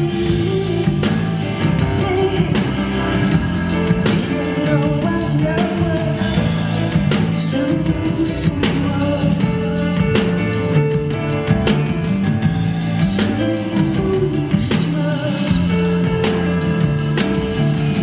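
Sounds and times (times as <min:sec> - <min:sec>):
bass line: 0:00.0 - 0:18.0
drums striking a regular beat: 0:00.0 - 0:18.0.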